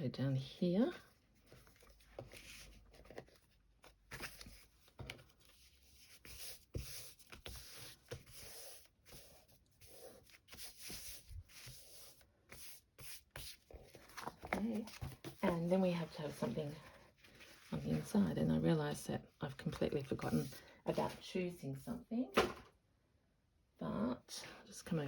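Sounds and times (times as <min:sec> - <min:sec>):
fabric and paper rustling: 0:00.6 - 0:08.3, 0:13.4 - 0:18.7, 0:19.5 - 0:21.8.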